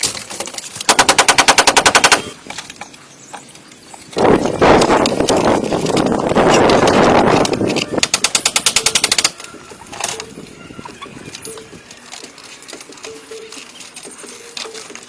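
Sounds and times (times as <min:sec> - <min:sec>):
rapid even clicks: 0:00.0 - 0:10.3.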